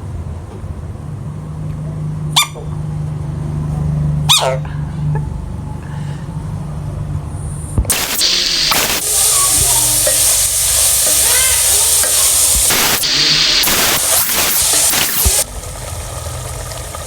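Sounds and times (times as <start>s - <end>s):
food sizzling in hot oil: 7.9s - 17.0s.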